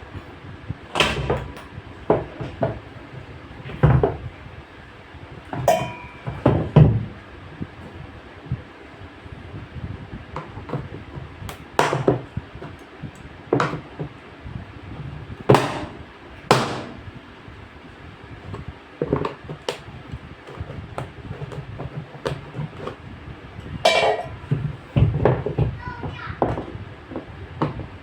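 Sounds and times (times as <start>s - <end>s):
hard knocks and clanks: 5.5s - 7.1s, 15.5s - 17.2s, 23.9s - 26.8s.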